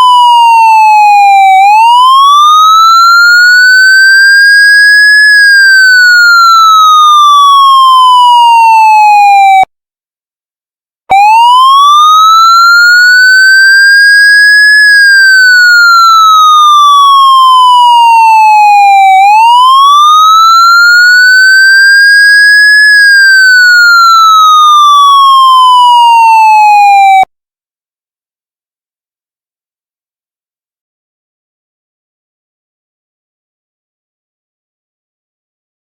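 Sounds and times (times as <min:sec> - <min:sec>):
siren wailing: 0:00.0 - 0:09.7, 0:11.1 - 0:27.3.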